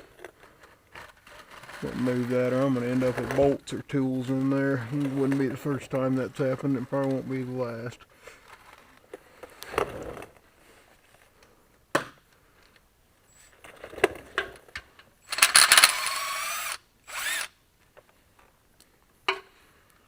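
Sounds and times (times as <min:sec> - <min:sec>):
power tool spinning: 0:15.3 - 0:17.6.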